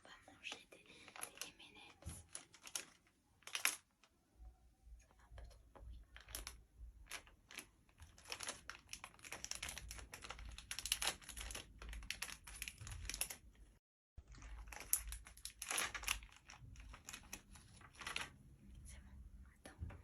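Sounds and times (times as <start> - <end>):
candy packet crinkling: 0.4 - 4.0, 6.0 - 13.6, 14.2 - 18.4.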